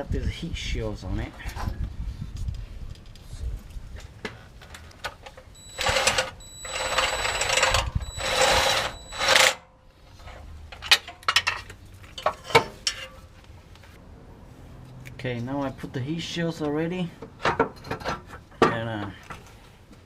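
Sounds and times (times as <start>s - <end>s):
power tool motor whine: 5.6s - 9.6s.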